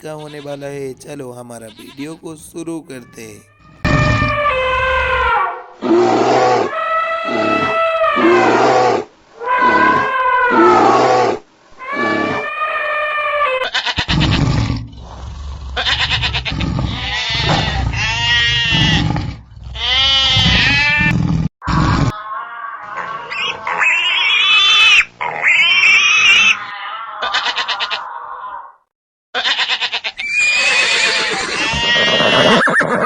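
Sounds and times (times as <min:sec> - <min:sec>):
wavering bleat-like animal calls: 0:00.0 - 0:05.5, 0:11.9 - 0:14.6, 0:15.6 - 0:28.6, 0:29.4 - 0:33.0
pulsing rising animal cries: 0:03.4 - 0:05.6, 0:11.8 - 0:28.6.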